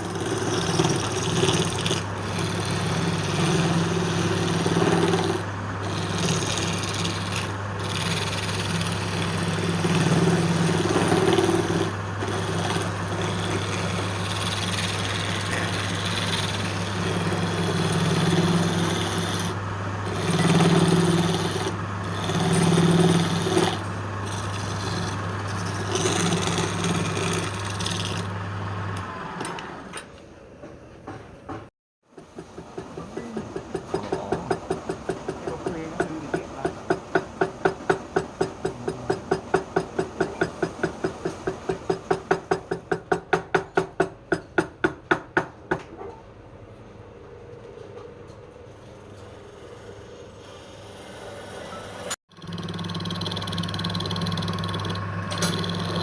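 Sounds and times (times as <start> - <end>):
tool cutting spinning wood: 0.0 - 29.0, 32.2 - 45.5, 48.8 - 56.0
wood lathe motor hum: 0.0 - 29.6, 48.8 - 56.0.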